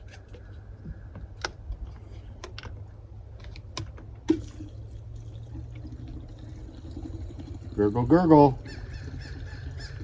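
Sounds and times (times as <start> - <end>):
fuel pouring into tank: 4.3 - 10.0.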